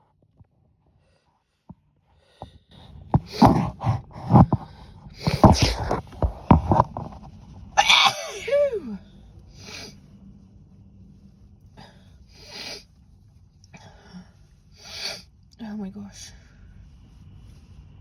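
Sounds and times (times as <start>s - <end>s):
woman sneezing: 7.8s - 9.0s.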